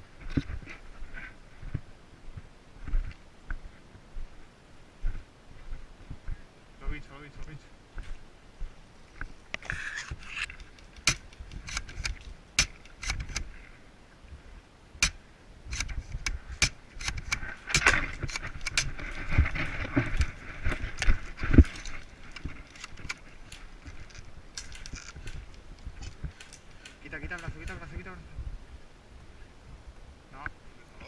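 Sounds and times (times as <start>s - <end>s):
gear clicking and rattling: 10.4s - 13.5s, 15.0s - 28.0s
rustling: 15.0s - 28.0s.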